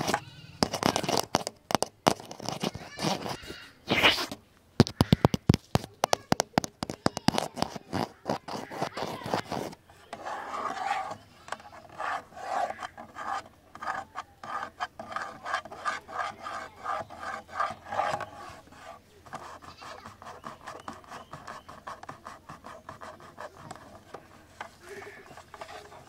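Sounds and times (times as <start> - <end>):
tapping on camera body: 0.0 - 9.8
scratching on camera body: 0.0 - 26.0.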